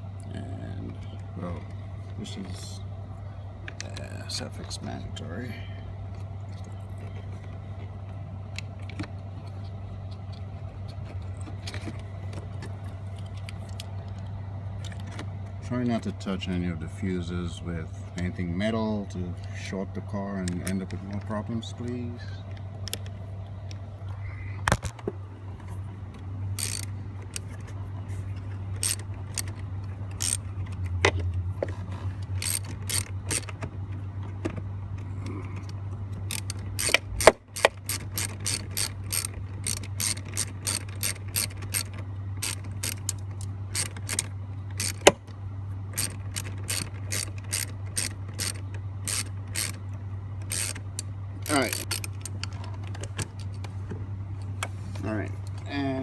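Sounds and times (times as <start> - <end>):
low hum: 0.0 - 56.0
ratchet tool clicking: 26.5 - 27.5, 28.8 - 30.8, 32.2 - 33.5, 36.3 - 45.1, 45.9 - 49.8, 50.4 - 52.4.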